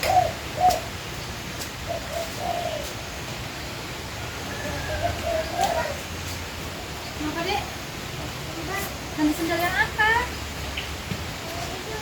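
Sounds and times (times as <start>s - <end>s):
dove cooing: 0.0s - 6.3s.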